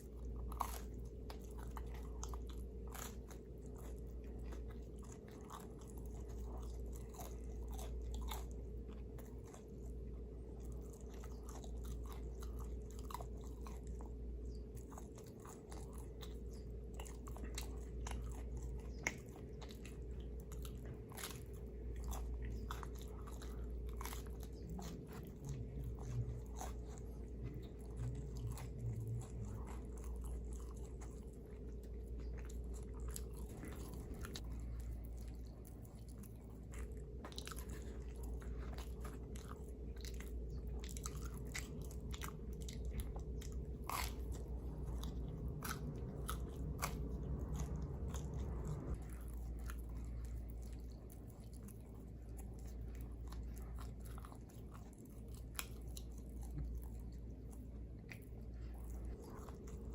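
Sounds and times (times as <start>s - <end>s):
person chewing food: 0.0s - 59.9s
steady low hum: 0.0s - 59.9s.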